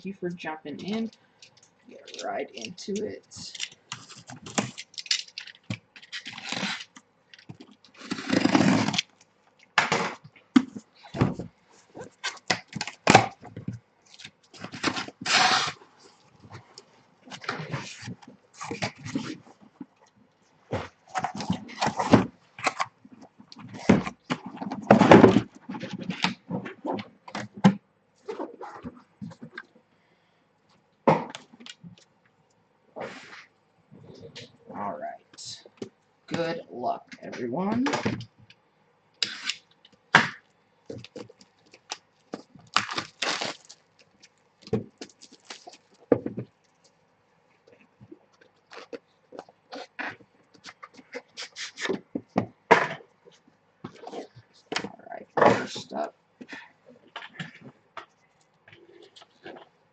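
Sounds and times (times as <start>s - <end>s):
cardboard and plastic rustling: 0.8s - 9.2s, 9.8s - 19.9s, 20.7s - 29.6s, 39.4s - 47.0s
sharp cracks and scrapes: 0.8s - 29.8s, 39.2s - 47.0s, 47.6s - 59.8s
packaging tearing and rustling: 3.5s - 9.2s, 14.1s - 15.8s, 40.9s - 46.8s.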